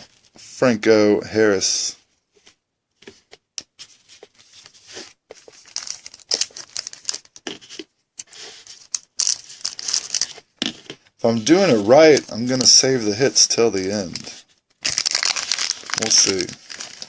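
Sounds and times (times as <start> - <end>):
card pack wrapper crinkling and tearing: 4.9 - 7.6, 8.4 - 10.4, 11.4 - 17.0.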